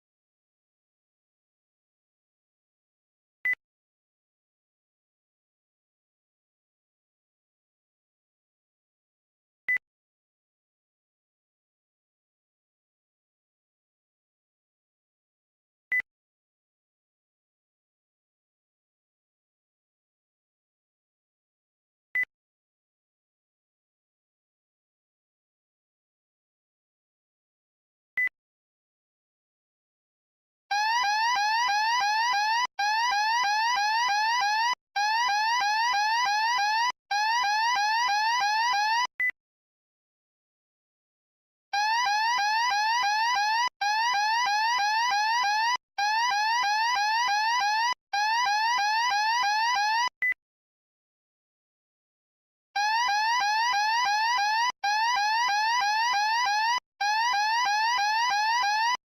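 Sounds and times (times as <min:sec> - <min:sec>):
fire alarm rising sweep tone: 0:30.7 - 0:39.1, 0:41.8 - 0:50.1, 0:52.8 - 0:59.0.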